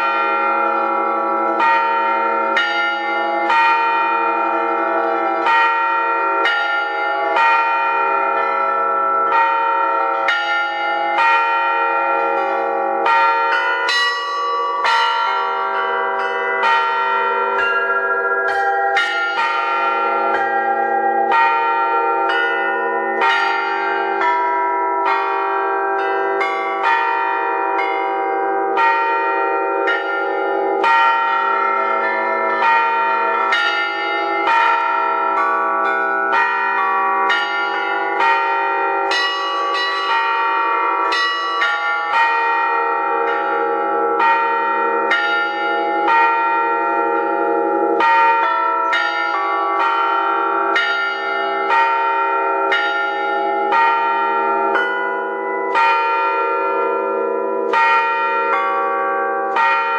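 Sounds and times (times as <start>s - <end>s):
church bells pealing: 0.0s - 59.9s.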